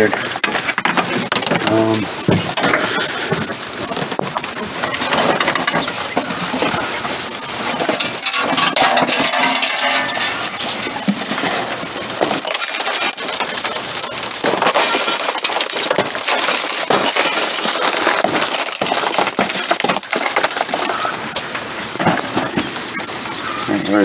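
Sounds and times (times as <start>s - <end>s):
broken glass crunching and clinking: 0.0s - 23.6s
high steady hiss: 0.0s - 24.0s.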